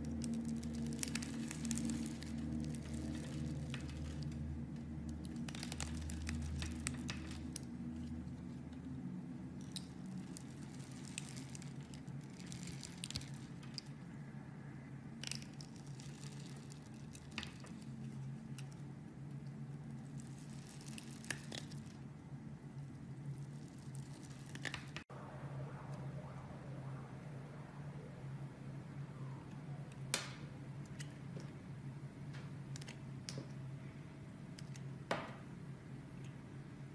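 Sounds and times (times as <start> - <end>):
steady low hum: 0.0 - 36.9.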